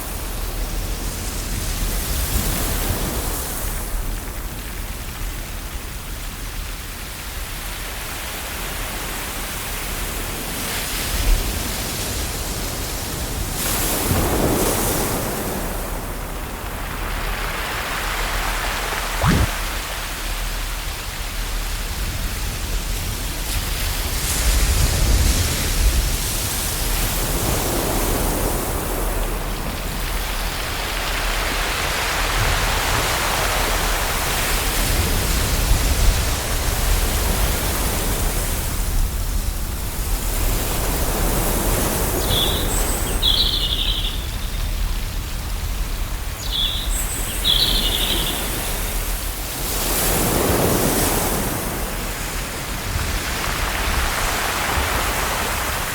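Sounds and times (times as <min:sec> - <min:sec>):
bird chirping: 0:42.3 - 0:44.5, 0:46.4 - 0:48.7
ocean surf washing: 0:47.3 - 0:55.9.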